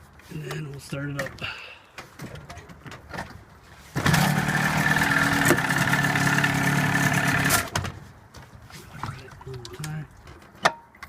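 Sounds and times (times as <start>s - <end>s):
electric starter cranking engine: 4.0s - 7.8s.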